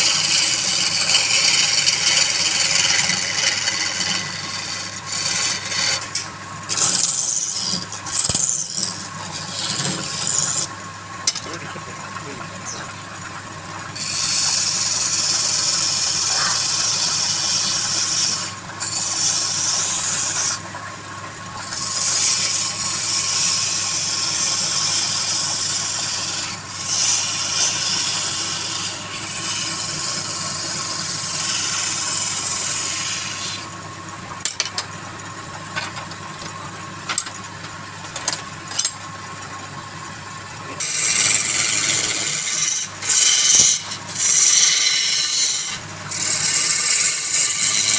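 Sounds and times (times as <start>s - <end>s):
tool rasping on spinning wood: 0.0s - 10.7s, 14.0s - 20.7s, 21.6s - 33.8s, 40.8s - 47.9s
lathe motor hum: 0.0s - 20.7s, 21.5s - 33.7s, 40.6s - 47.9s.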